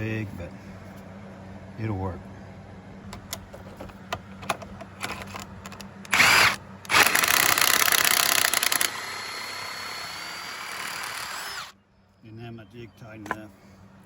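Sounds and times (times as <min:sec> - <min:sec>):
cordless driver driving screws: 0:03.2 - 0:11.7.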